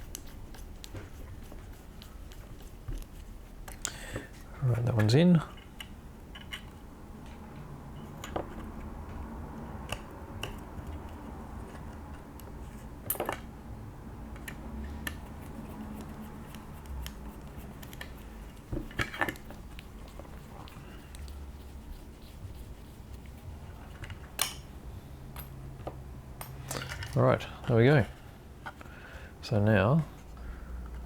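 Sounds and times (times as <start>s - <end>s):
low steady hum: 0.0s - 31.0s
tools clicking and tapping: 5.5s - 6.8s, 9.8s - 13.5s.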